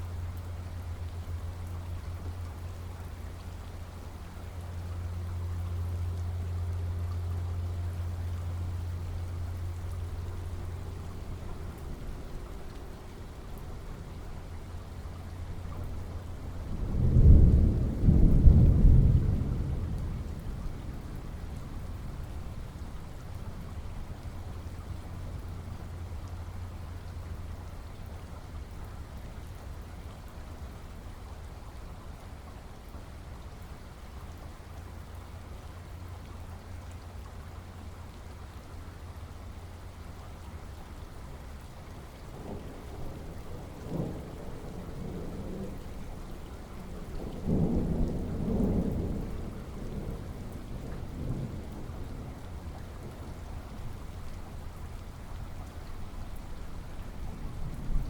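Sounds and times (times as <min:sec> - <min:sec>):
steady rain: 0:00.0 - 0:58.0
thunder rumbling: 0:09.6 - 0:23.1, 0:42.3 - 0:53.6, 0:56.8 - 0:58.0.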